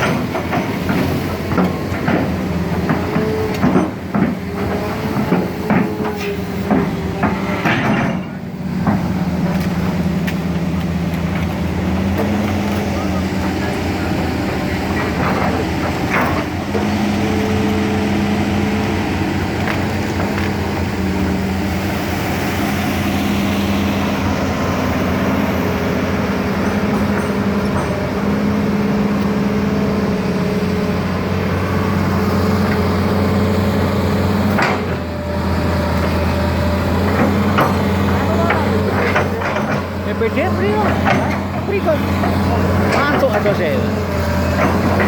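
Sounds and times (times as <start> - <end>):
excavator diesel engine running: 0.0 - 45.0.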